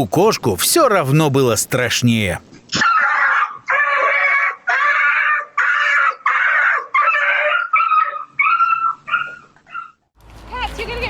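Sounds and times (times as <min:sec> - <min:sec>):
animal screeching cries: 0:02.8 - 0:10.0.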